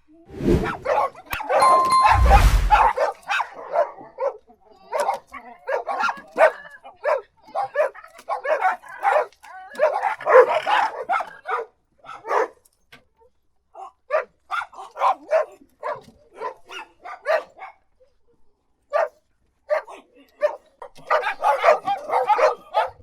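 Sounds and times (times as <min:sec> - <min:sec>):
dog barking: 0:17.0 - 0:17.5, 0:21.1 - 0:23.0.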